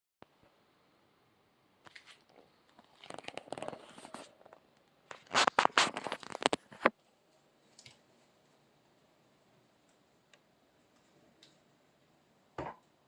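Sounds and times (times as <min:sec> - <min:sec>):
scratchy rustling of parts: 0:01.9 - 0:07.0.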